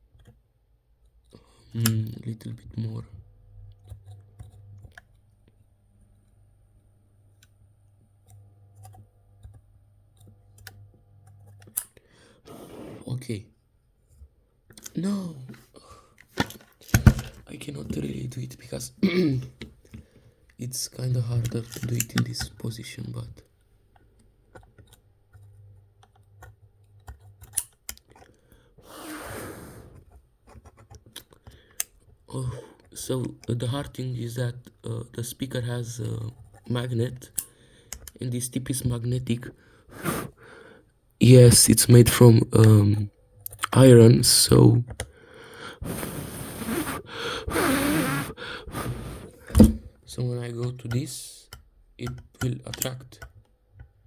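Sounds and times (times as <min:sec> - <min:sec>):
small clicks and taps of tip: 0:37.3 - 0:38.2, 0:50.8 - 0:54.0.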